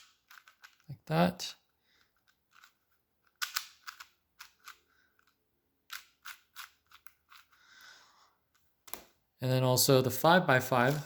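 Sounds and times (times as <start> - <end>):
speed cube clacking: 0.0 - 0.9, 2.2 - 5.3, 5.9 - 7.6.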